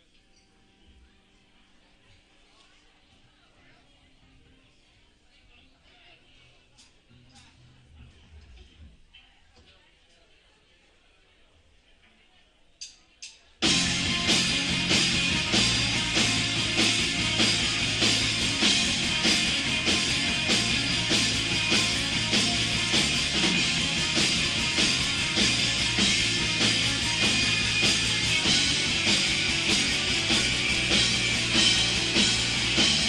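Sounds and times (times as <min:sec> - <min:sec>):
rock band playing: 0:13.6 - 0:33.0.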